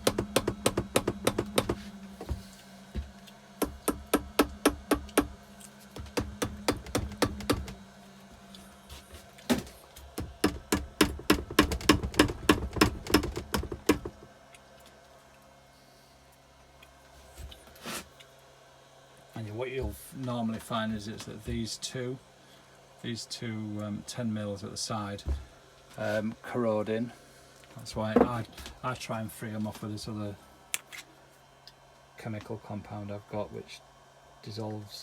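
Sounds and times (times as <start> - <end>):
low steady hum: 0.0 - 35.0
rapid sharp tool clicks: 6.1 - 7.8, 10.4 - 14.2.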